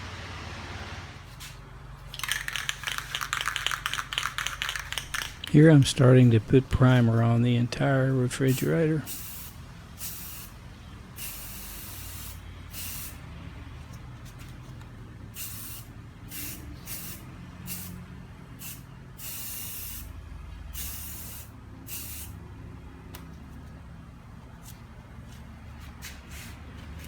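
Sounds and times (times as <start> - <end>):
steady low hum: 1.1 - 16.3
spray paint hissing bursts: 2.1 - 5.6, 8.5 - 10.6, 11.2 - 13.2, 15.4 - 18.0, 18.6 - 20.1, 20.8 - 22.4.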